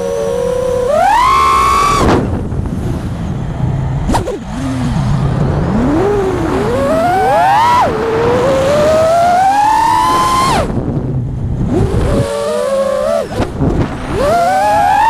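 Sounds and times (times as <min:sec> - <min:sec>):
drone motors whining: 0:00.0 - 0:15.0.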